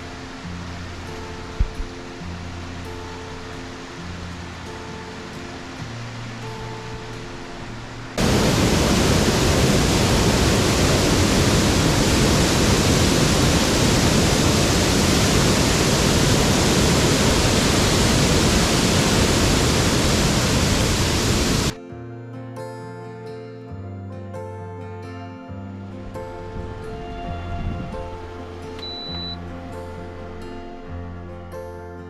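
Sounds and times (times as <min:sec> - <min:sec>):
stream water rushing: 0:00.0 - 0:21.8.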